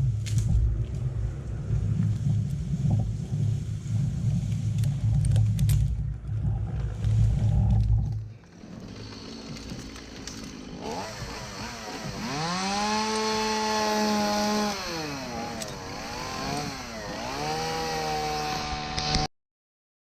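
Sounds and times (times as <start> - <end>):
chainsaw revving: 8.4 - 19.3.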